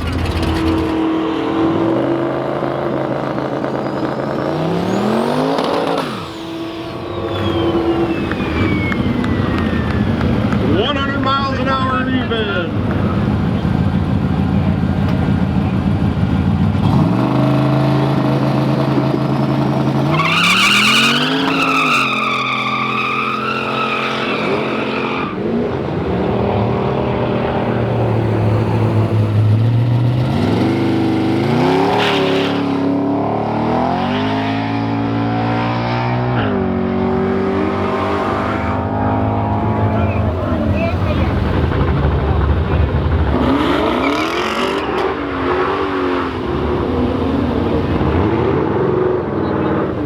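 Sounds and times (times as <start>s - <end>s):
race car engines revving: 0.0s - 50.0s
tires squealing: 3.5s - 13.7s, 19.2s - 32.9s, 36.3s - 48.6s.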